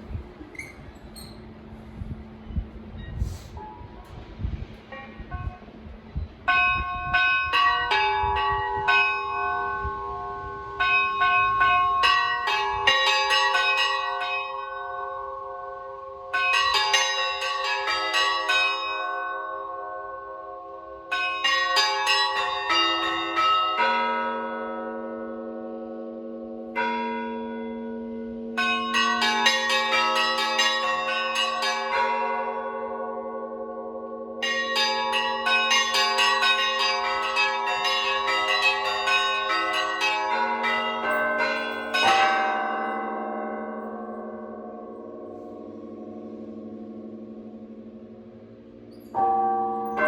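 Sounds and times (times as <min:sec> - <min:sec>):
small church bells chiming: 0:06.5 - 0:50.0
deep bells humming: 0:34.0 - 0:50.0.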